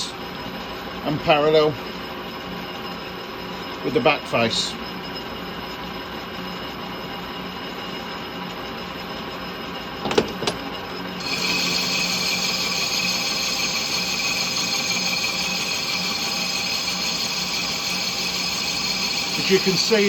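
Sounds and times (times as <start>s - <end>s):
lathe cutting metal with whine: 11.1s - 20.0s
machine hum: 11.2s - 20.0s.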